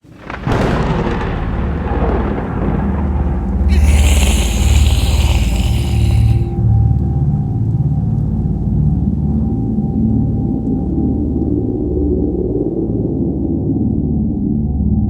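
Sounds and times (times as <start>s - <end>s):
high hiss: 3.7s - 6.5s.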